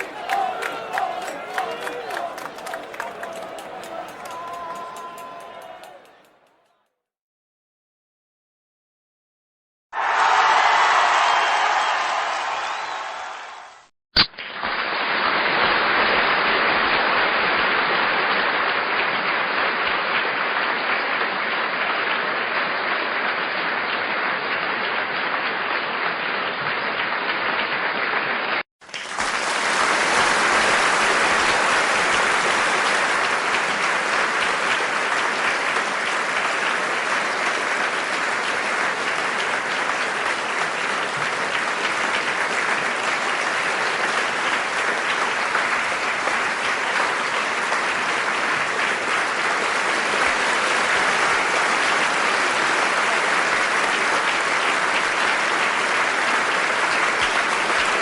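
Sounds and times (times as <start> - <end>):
audience applauding: 0.0 - 6.9, 10.0 - 13.9, 18.5 - 58.0.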